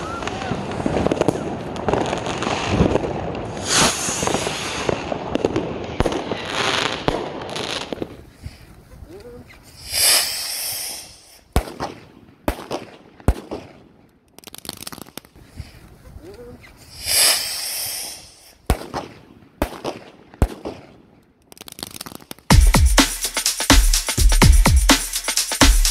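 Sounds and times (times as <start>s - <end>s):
sharp firework bangs: 0.0s - 8.2s, 9.8s - 13.8s, 16.9s - 21.0s
firecrackers crackling rapidly: 0.0s - 8.8s, 9.4s - 15.8s, 16.6s - 25.9s
firework hissing rush: 3.4s - 5.4s, 9.6s - 11.5s, 16.7s - 18.6s.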